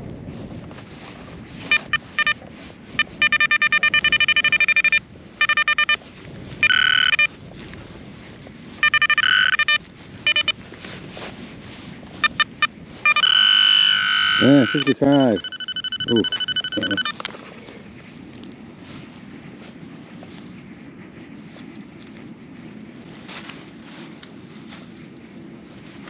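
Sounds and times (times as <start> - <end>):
metal detector beeping: 1.6 - 6.0, 6.6 - 7.4, 8.8 - 10.6, 12.2 - 17.3
metal detector steady tone: 1.6 - 7.4, 8.7 - 10.6, 12.1 - 17.5.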